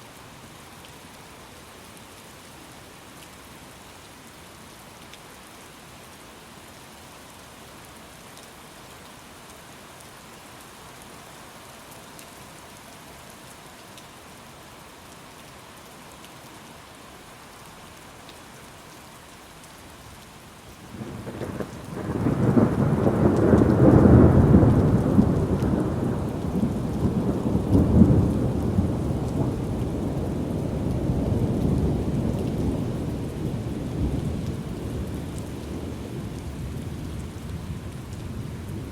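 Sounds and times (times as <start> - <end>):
steady rain falling: 0.0 - 38.9
rolling thunder: 21.0 - 38.9.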